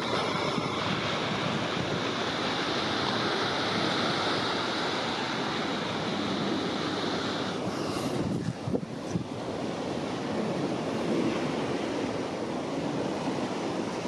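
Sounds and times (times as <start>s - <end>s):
wind rushing: 7.9s - 9.4s.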